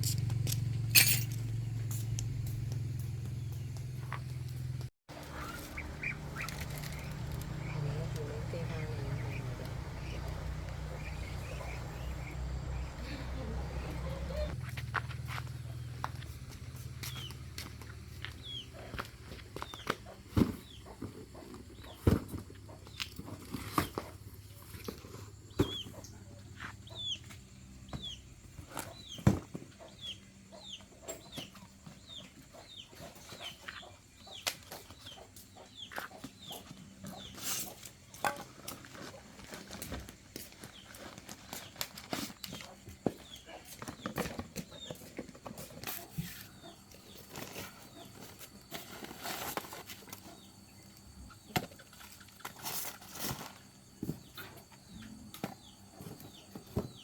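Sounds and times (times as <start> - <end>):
sharp knocks and clinks: 0.0 - 2.0
chickens peeping: 5.1 - 14.8, 18.1 - 24.2, 25.4 - 37.8, 42.4 - 52.1.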